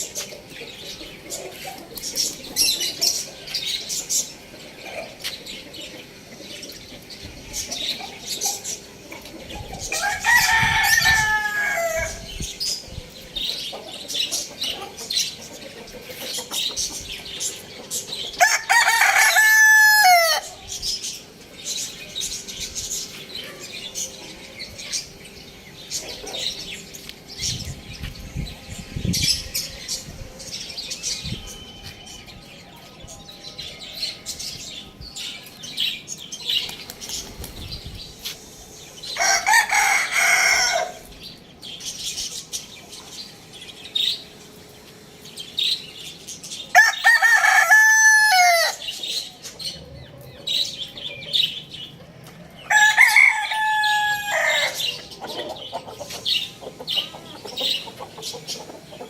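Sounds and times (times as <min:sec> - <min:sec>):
chickens clucking and chirping: 0:00.0 - 0:59.0
rooster crowing: 0:09.9 - 0:12.3, 0:18.4 - 0:20.5, 0:39.2 - 0:41.0, 0:46.7 - 0:48.9, 0:52.6 - 0:54.9.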